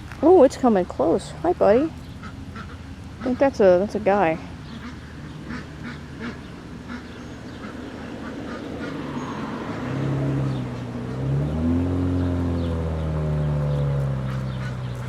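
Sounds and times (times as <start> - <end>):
vehicle engine: 0.0 - 15.0
ducks quacking: 2.0 - 9.9, 13.7 - 15.0.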